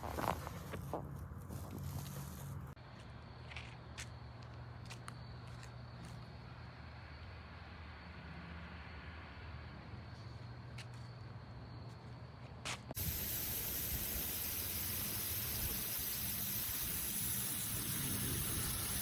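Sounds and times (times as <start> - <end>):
pressure washer spray hissing: 13.0 - 19.0.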